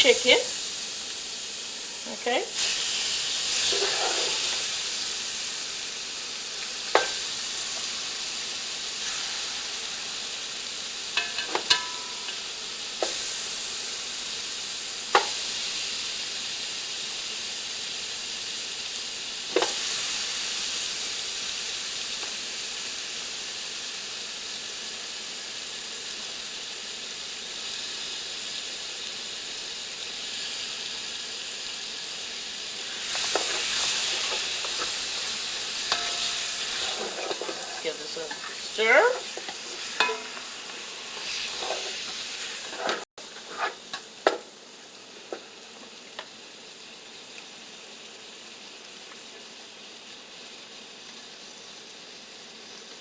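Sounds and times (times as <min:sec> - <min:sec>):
chicken sizzling in hot oil: 0:00.0 - 0:53.0
sharp metal clinks: 0:35.8 - 0:36.7.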